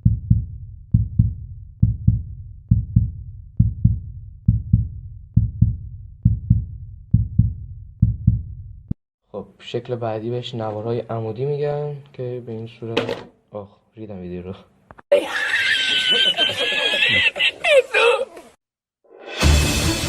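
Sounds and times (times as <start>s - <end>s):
heartbeat thumps: 0.0s - 9.0s.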